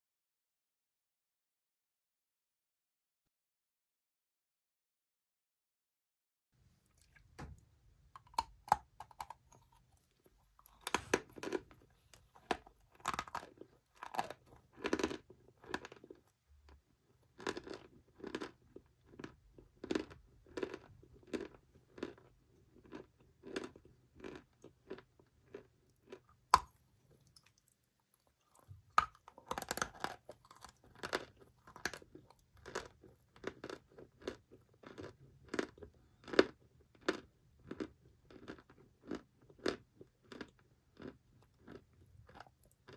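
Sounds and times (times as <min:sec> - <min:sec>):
chalk being chewed: 0:08.2 - 0:16.3, 0:19.1 - 0:42.9.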